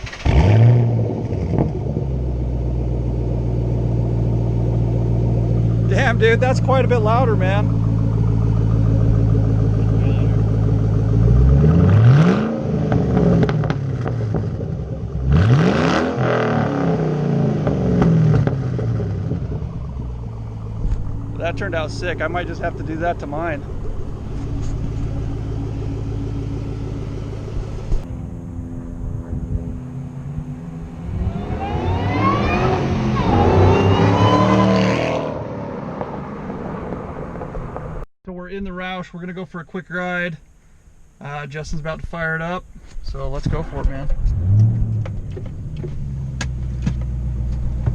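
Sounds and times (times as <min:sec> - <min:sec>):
car exhaust idling and revving: 0:00.0 - 0:38.1, 0:40.4 - 0:47.9
exhaust crackles: 0:00.0 - 0:47.9.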